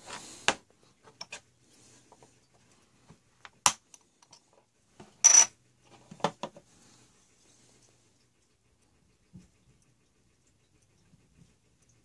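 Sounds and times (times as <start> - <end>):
ringing metal clink: 5.2 - 5.5.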